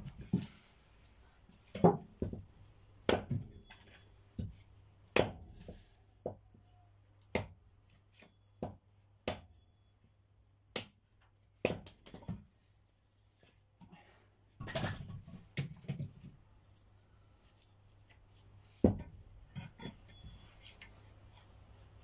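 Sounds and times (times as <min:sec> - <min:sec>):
firewood knocks and cracks: 0:14.6 - 0:16.2.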